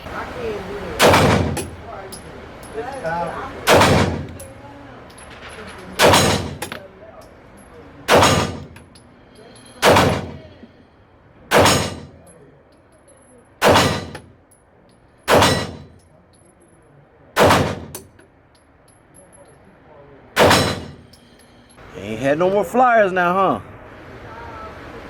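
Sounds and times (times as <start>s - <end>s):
pistol shots echoing: 1.0s - 1.8s, 3.7s - 4.4s, 6.0s - 6.8s, 8.1s - 8.8s, 9.8s - 10.5s, 11.5s - 12.2s, 13.6s - 14.3s, 15.3s - 15.9s, 17.4s - 18.0s, 20.4s - 21.1s.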